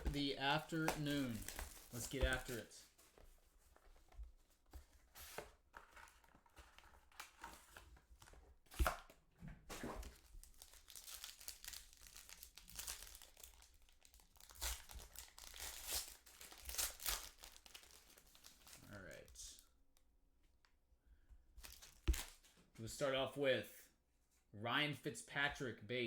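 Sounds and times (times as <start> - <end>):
plastic wrapping tearing: 0.0 - 2.7, 10.4 - 18.9.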